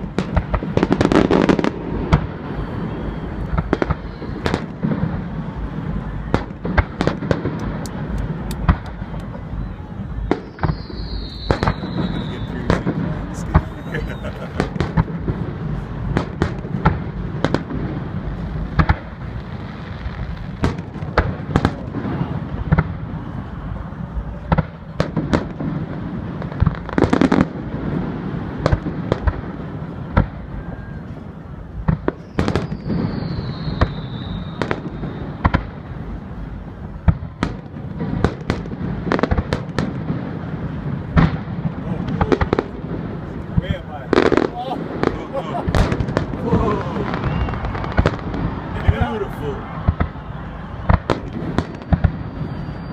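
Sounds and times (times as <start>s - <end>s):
falling firework whistle: 0.0s - 15.4s, 30.0s - 35.8s, 44.1s - 52.9s
loud firework boom: 0.0s - 19.6s, 37.0s - 52.9s
fireworks bangs and cracks: 0.0s - 52.9s.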